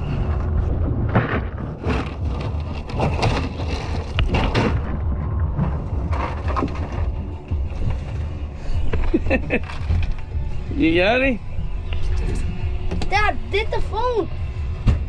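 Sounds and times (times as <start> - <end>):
sharp knocks and thumps: 0.4 - 9.1.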